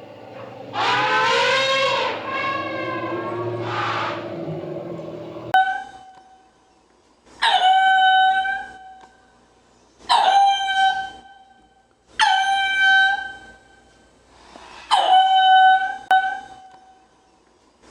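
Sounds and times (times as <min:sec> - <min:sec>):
animal calling high cry: 0:00.0 - 0:05.6.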